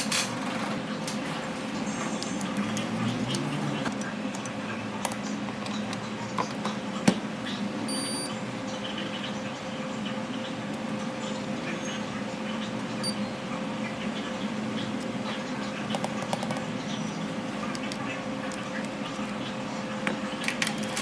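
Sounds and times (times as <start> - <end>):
electrical equipment hum: 0.0 - 21.0
short high electronic beep: 7.9 - 8.3.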